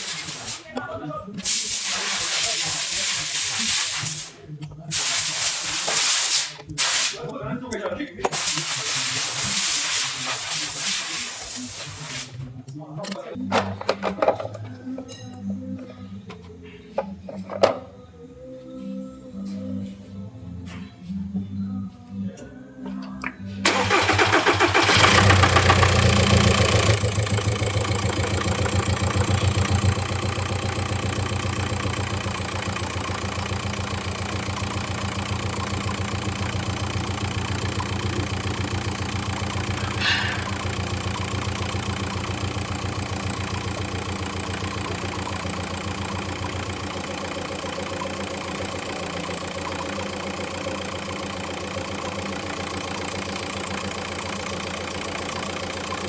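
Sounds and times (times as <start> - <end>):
diesel engine idling: 0.0 - 5.9, 23.2 - 56.0
engine ticking: 23.2 - 56.0.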